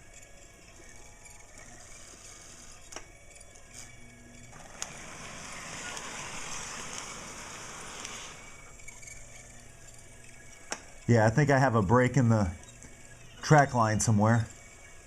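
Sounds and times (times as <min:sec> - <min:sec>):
toy train whirring: 0:00.0 - 0:11.1
faint steady hum: 0:00.0 - 0:15.0.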